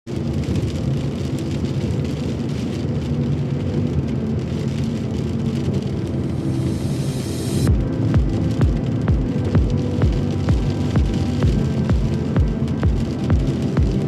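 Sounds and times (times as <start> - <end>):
rain patter: 0.1 - 14.0
traffic engine hum: 4.0 - 14.0.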